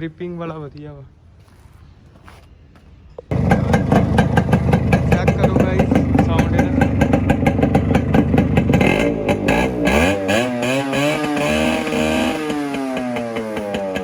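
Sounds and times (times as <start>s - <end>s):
motorcycle engine revving: 3.3s - 14.0s.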